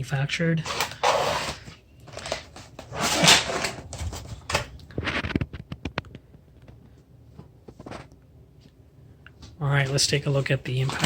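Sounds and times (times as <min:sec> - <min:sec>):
packaging rustling: 0:00.6 - 0:05.3.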